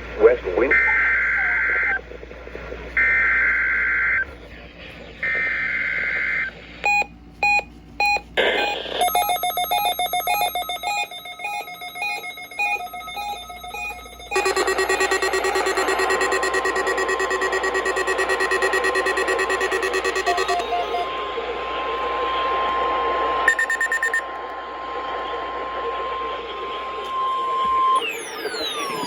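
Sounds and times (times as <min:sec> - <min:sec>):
pulsing warning alarm tone: 0:05.3 - 0:21.1, 0:23.5 - 0:24.2
fast beeps and data tones: 0:06.9 - 0:21.1, 0:23.5 - 0:24.2, 0:27.9 - 0:29.0
two-pitch digital warbling bursts: 0:10.7 - 0:21.1.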